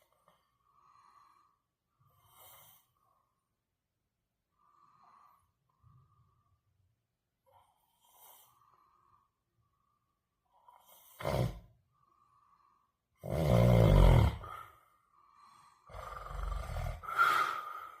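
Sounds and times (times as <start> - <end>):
man snoring: 10.8 - 11.7, 13.2 - 14.8, 15.6 - 18.0.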